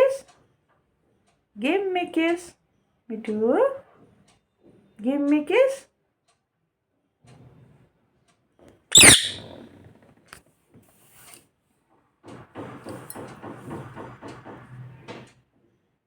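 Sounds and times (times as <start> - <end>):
parrot squawking: 9.0 - 9.5.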